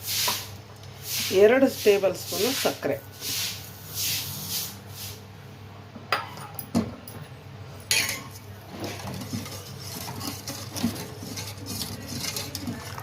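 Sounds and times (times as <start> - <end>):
metal spoon clinking on pan: 7.9 - 8.3
scraping rustle: 8.7 - 13.0.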